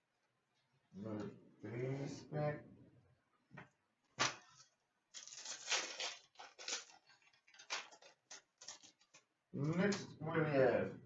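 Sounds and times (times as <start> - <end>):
foil wrapper crinkling: 4.2 - 9.3
foil wrapper tearing: 4.5 - 9.2.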